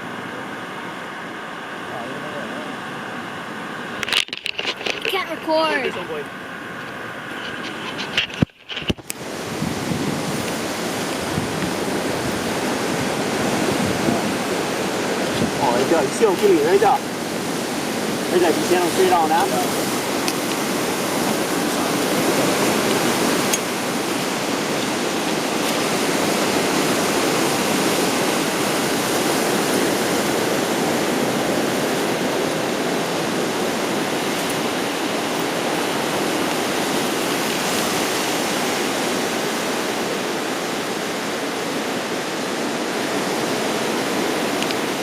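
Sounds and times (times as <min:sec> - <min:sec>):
ocean surf on rocky shore: 0:00.0 - 0:45.0.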